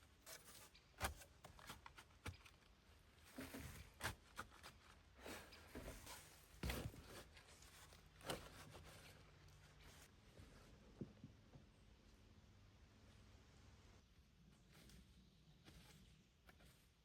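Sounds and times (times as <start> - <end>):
soft rustling: 3.2 - 10.9.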